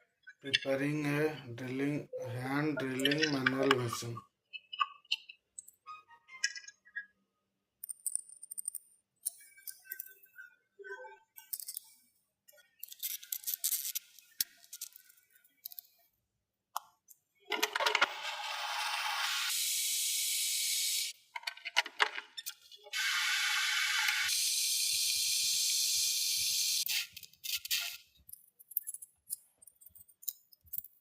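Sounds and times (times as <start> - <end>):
metallic clicks and rattles: 28.3 - 31.0.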